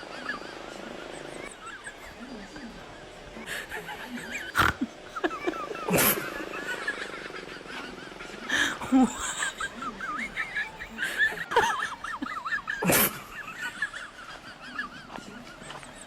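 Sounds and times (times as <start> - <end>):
harsh animal cries: 4.3 - 6.1.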